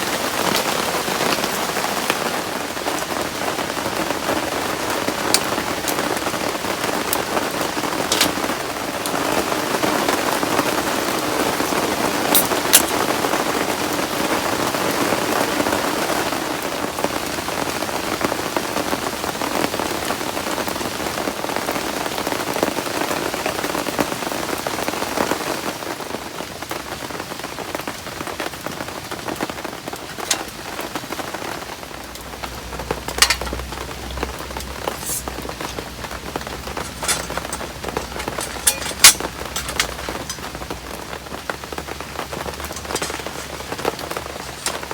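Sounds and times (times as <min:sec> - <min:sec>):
heavy rain falling: 0:00.0 - 0:44.9
sharp clicks and knocks: 0:08.0 - 0:09.2, 0:32.7 - 0:40.9, 0:42.3 - 0:44.9.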